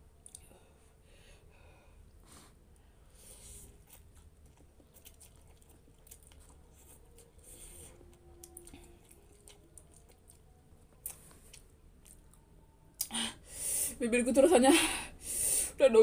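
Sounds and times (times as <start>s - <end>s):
person chewing noodles: 3.0s - 13.1s.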